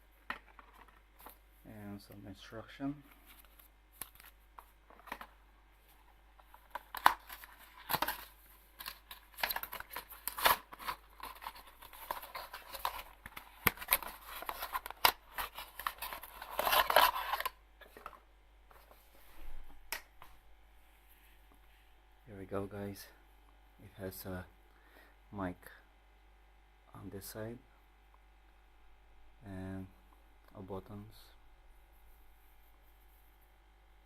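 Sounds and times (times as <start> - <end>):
packaging rustling and tearing: 6.4 - 18.0.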